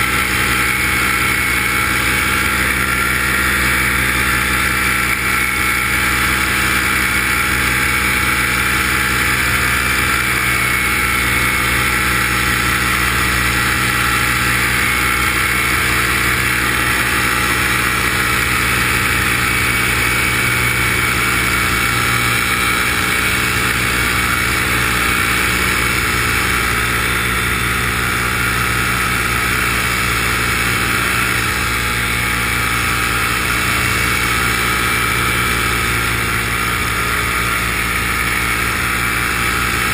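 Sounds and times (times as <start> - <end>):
aircraft motor and propeller: 0.0 - 39.9.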